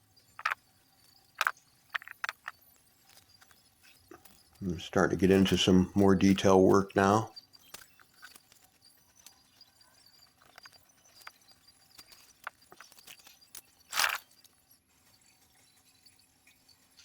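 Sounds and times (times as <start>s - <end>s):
faint clicks and taps: 0.4s - 0.6s, 1.4s - 4.7s.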